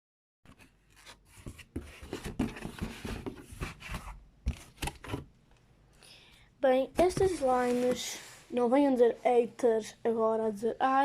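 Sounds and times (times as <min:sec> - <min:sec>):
handling rustling and scraping: 0:00.5 - 0:05.3, 0:07.0 - 0:08.5.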